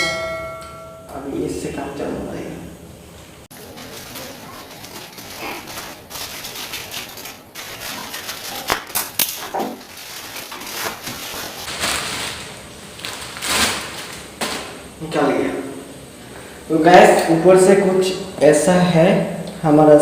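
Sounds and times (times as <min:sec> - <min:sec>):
packaging crinkling and rustling: 0:03.5 - 0:14.8.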